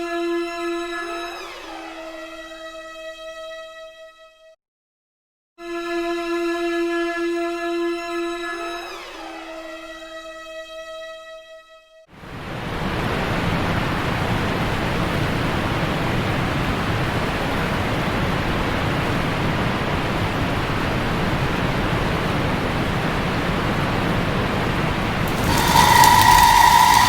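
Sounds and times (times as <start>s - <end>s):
heavy rain and hail: 25.3s - 27.0s.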